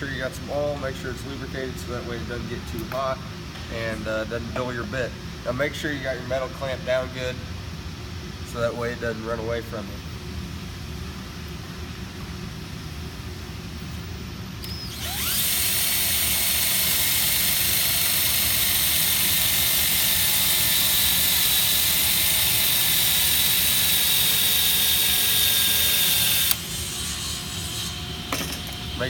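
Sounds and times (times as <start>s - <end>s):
electric drill boring metal: 14.6s - 29.0s.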